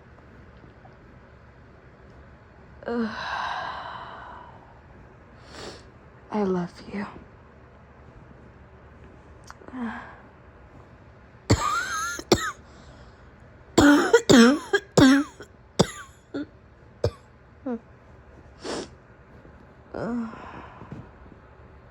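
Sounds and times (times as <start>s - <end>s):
woman coughing: 11.5s - 12.6s, 13.8s - 16.1s.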